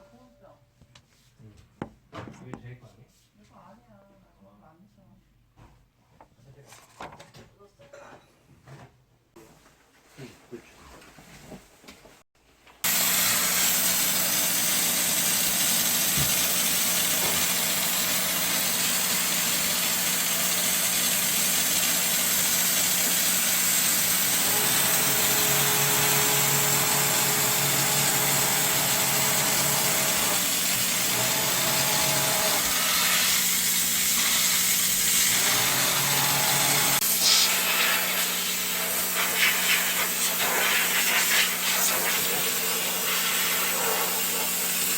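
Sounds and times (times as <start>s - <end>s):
cleaning machine hissing and humming: 12.8s - 44.9s.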